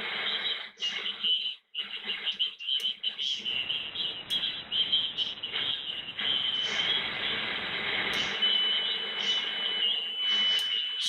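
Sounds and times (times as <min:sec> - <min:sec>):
radio band hiss: 0:00.0 - 0:10.6
sharp clicks: 0:02.7 - 0:08.5
high whistling carrier tones: 0:02.8 - 0:11.0.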